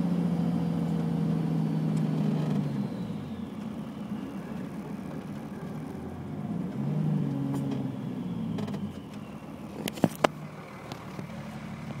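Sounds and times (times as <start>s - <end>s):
diesel engine running: 0.0s - 12.0s
faint high turbo whistle: 7.7s - 9.8s.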